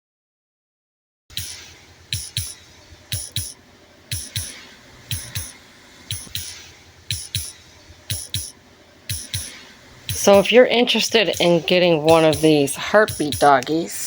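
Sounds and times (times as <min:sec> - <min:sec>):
heartbeat double thump: 0:02.1 - 0:03.5, 0:04.1 - 0:06.5, 0:09.1 - 0:13.5.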